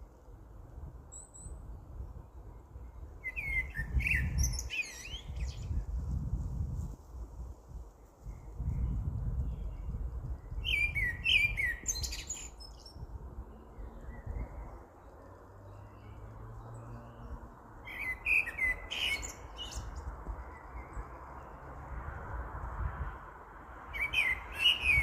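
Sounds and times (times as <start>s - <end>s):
songbird singing whistled notes: 1.1s - 1.6s, 2.5s - 5.8s, 8.3s - 21.5s, 23.9s - 25.0s.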